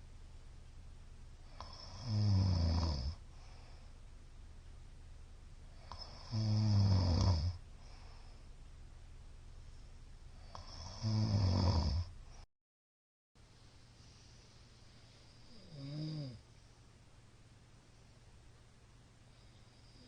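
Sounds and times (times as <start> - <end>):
quiet breathing: 1.4 - 4.7, 5.6 - 9.0, 9.6 - 12.5, 13.5 - 17.1, 17.7 - 20.0
man snoring loudly: 1.5 - 3.2, 5.9 - 7.6, 10.4 - 12.1, 15.5 - 16.4.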